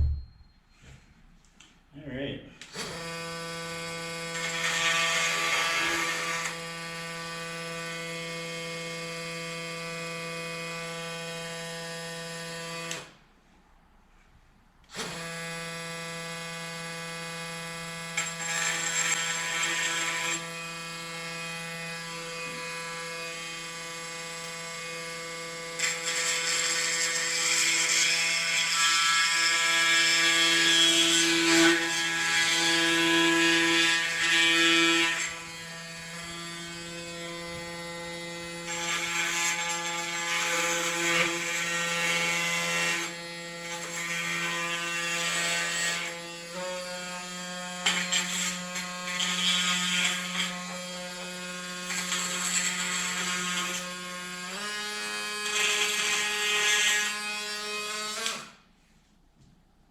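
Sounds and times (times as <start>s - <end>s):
oscillating multi-tool humming: 15.1s - 58.4s.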